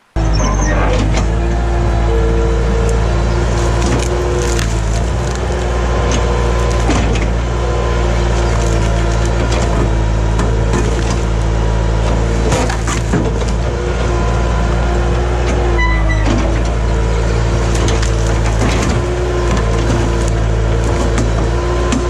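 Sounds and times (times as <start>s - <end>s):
skid steer engine running: 0.0s - 22.0s
wood cracking and snapping: 2.9s - 11.6s, 12.2s - 14.1s, 17.4s - 22.0s.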